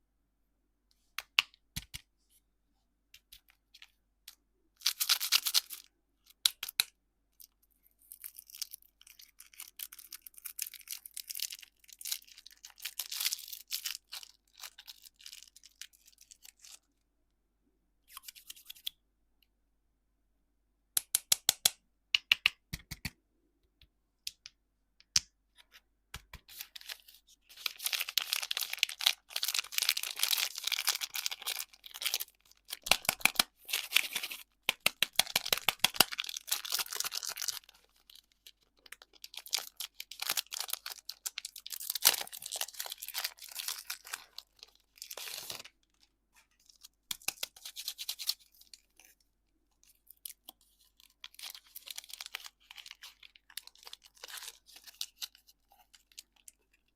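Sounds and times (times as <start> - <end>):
plastic wrapper crinkling: 26.5 - 49.2, 49.8 - 56.9.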